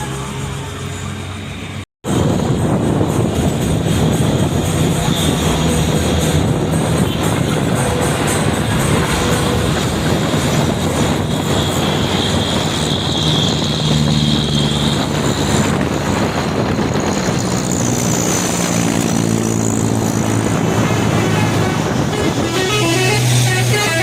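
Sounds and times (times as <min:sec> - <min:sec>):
truck diesel engines labouring: 0:00.0 - 0:24.0.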